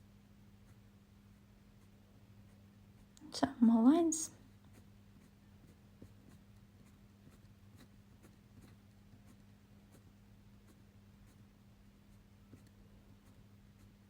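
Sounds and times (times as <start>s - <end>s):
low steady hum: 0.0s - 14.0s
pen scratching on paper: 4.7s - 11.4s, 12.5s - 14.0s.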